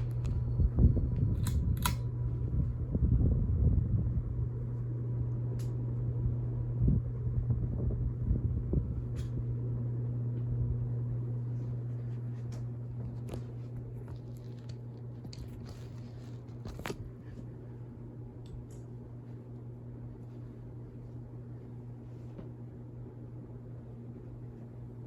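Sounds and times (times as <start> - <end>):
low rumble: 0.0 - 19.1
ceiling fan motor humming: 0.0 - 25.0.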